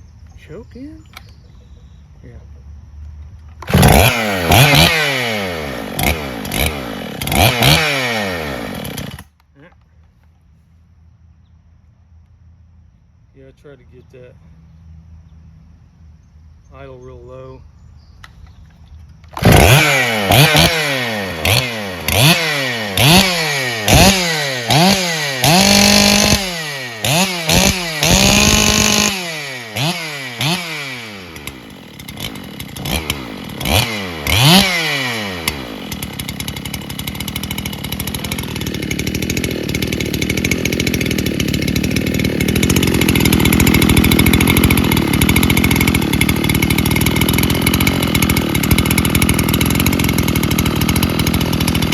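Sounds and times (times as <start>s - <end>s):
chainsaw revving and idling: 3.5s - 9.5s, 19.3s - 51.9s.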